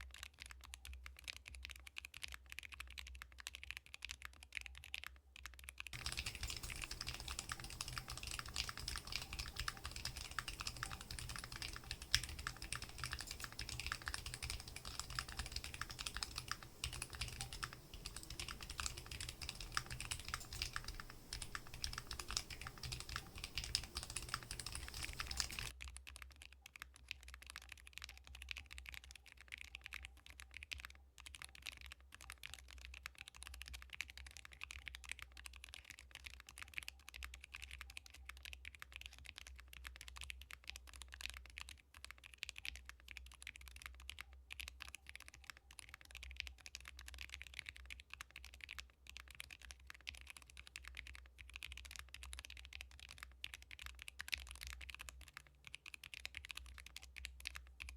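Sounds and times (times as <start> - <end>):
mechanical keyboard typing: 0.1 - 57.9
faint low hum: 6.0 - 25.7.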